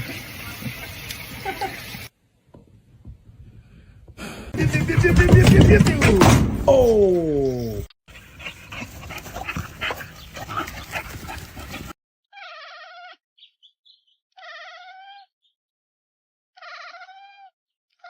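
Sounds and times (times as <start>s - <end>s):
pet animal crying out: 12.3s - 13.2s, 14.4s - 15.3s, 16.6s - 17.6s.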